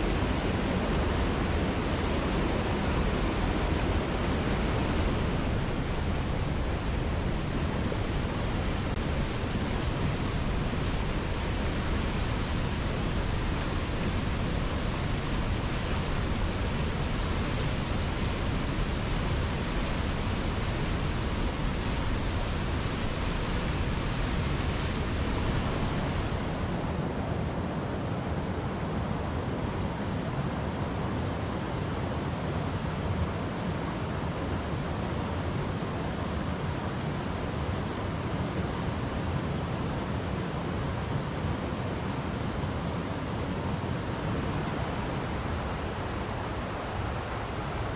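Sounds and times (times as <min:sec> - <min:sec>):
waterfall rushing: 0:00.0 - 0:26.9, 0:43.2 - 0:47.9.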